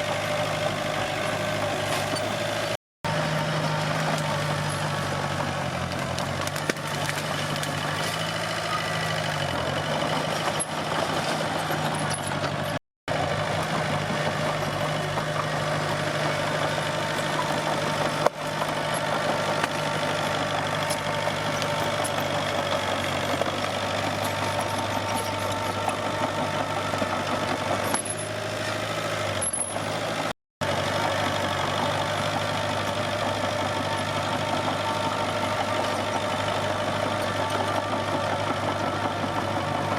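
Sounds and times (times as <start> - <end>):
bulldozer diesel engine running: 0.0 - 39.9.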